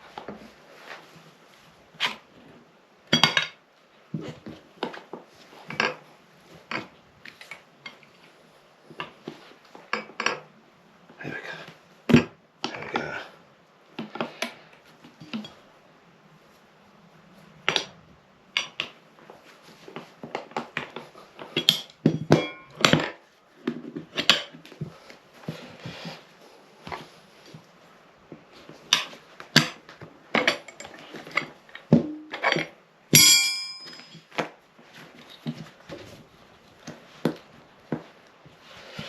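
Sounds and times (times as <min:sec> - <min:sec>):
tyre irons clanking on wheel rim: 0:21.6 - 0:23.2.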